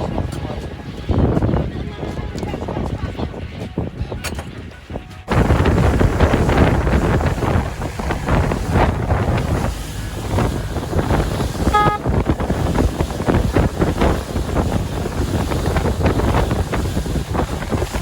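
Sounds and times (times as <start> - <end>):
water and waves rumble: 0.0 - 3.9, 5.3 - 18.0
wind buffeting microphone: 0.0 - 18.0.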